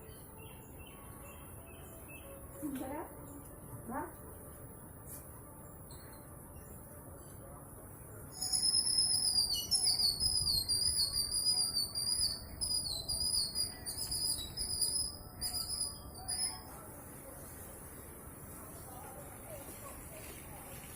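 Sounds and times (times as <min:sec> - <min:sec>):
high-pitched warbling whistle: 0:08.4 - 0:16.6.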